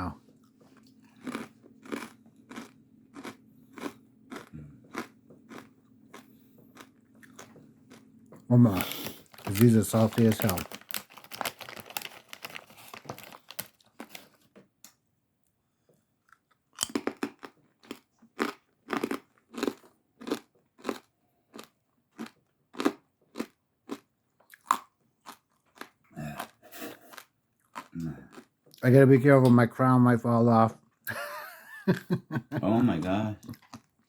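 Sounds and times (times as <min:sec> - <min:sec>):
crunchy chewing: 0:00.4 - 0:14.4, 0:16.2 - 0:28.8.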